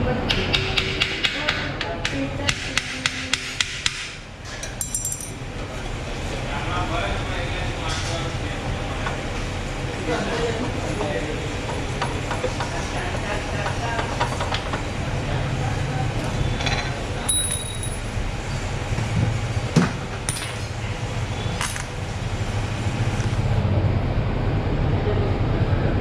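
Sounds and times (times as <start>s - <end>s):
metallic clinks of hand tools: 4.6s - 5.4s.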